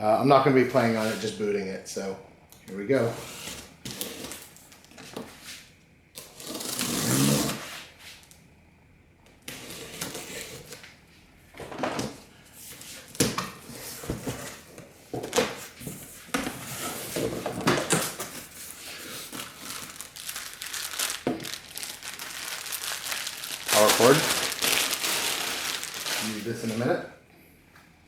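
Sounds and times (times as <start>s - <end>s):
packaging crinkling and rustling: 17.1s - 27.0s.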